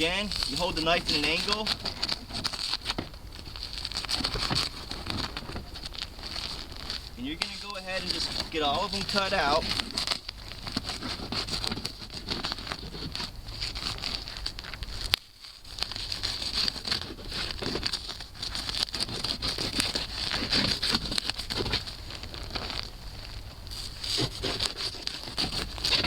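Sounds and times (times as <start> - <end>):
utility knife cutting insulation: 0.0 - 14.3, 23.8 - 26.0
foil scratching and crinkling: 0.0 - 26.0.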